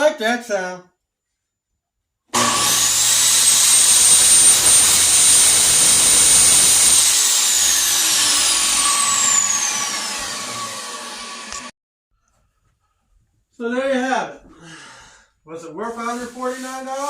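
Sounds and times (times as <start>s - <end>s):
table saw high whine winding down: 2.4s - 11.7s.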